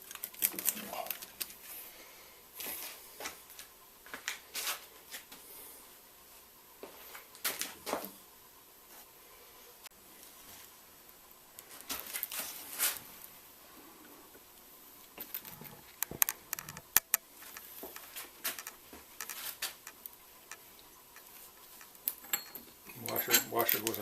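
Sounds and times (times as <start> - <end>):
metal parts clicking and rattling: 15.2 - 24.0.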